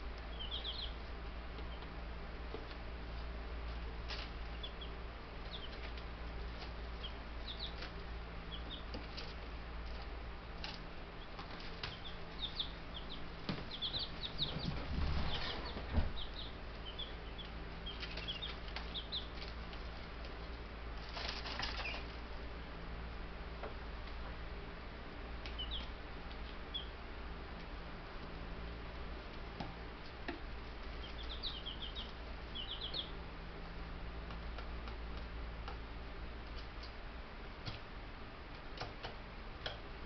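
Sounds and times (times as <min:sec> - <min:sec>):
steady low hum: 0:00.0 - 0:40.0
chicks peeping: 0:00.1 - 0:22.4, 0:25.4 - 0:27.0, 0:27.6 - 0:35.8
wings flapping and scuffling: 0:02.5 - 0:04.8, 0:05.4 - 0:22.3, 0:29.2 - 0:33.2.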